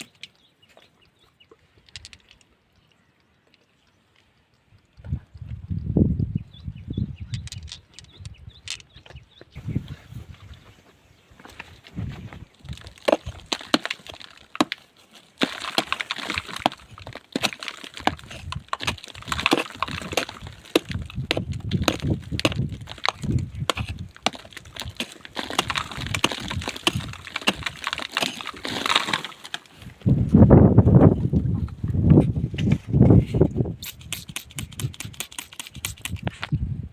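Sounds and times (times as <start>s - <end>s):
scraping crunching noise: 7.4s - 36.6s
sharp knocks and cracks: 12.6s - 29.7s.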